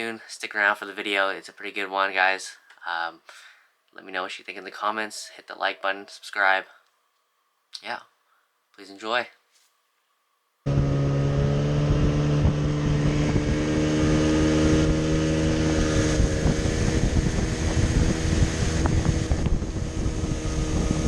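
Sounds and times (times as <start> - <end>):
boat motor running: 10.7 - 21.0
wind buffeting microphone: 10.9 - 21.0.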